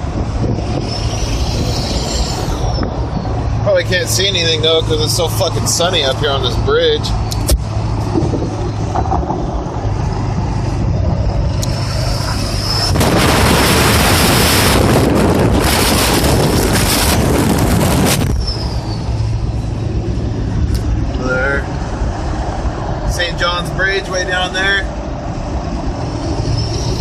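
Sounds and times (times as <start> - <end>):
loud rushing noise: 0.0 - 6.3, 7.4 - 23.7
diesel engine drone: 0.0 - 27.0
turbo whistling: 0.7 - 3.3, 18.3 - 19.3.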